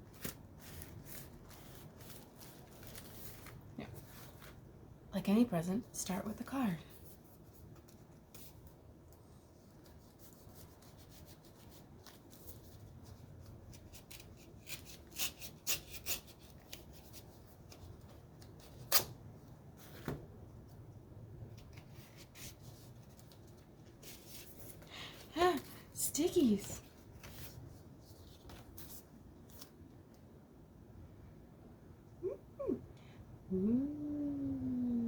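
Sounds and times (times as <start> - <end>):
paper rubbing and rustling: 0.0 - 4.6, 7.0 - 18.9, 21.6 - 29.9.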